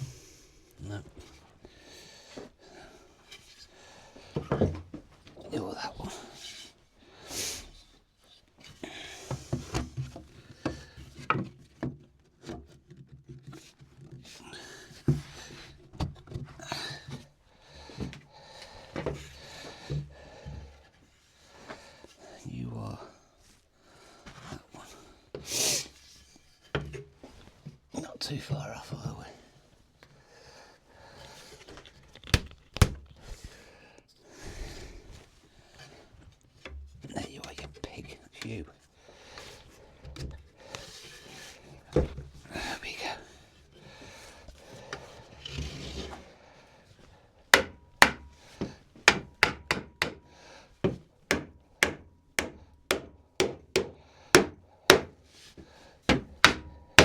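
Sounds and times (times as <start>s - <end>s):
wood scraping on wood: 39.4s - 43.2s, 43.8s - 46.4s
wood sliding rub: 43.8s - 46.3s
wooden knocks and taps: 47.6s - 50.2s, 50.8s - 55.2s, 56.1s - 57.0s.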